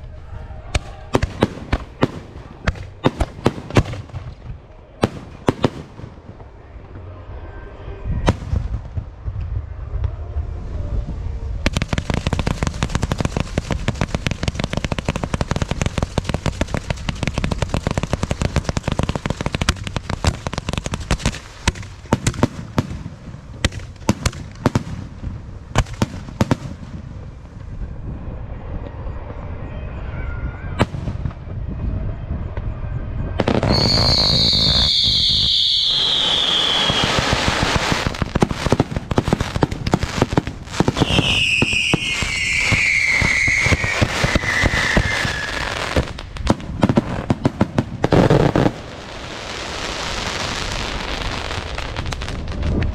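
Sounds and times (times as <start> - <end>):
fireworks crackling and popping: 0.0 - 7.1, 11.5 - 28.0, 33.3 - 52.9
shrill falling whistle: 33.5 - 37.1, 41.0 - 45.9.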